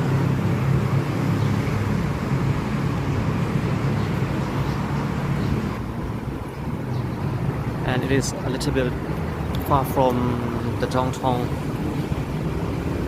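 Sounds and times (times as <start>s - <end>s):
traffic rumble: 0.0s - 13.0s.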